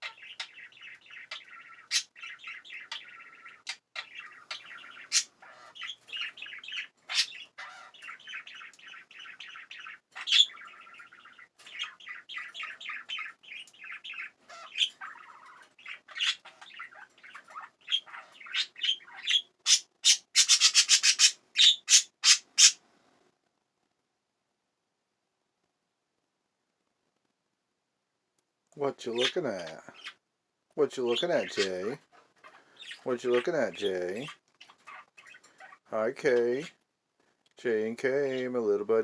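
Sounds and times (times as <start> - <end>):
budgerigars chirping and warbling: 0.0 - 22.8, 28.8 - 30.2, 30.8 - 36.8, 38.0 - 38.7.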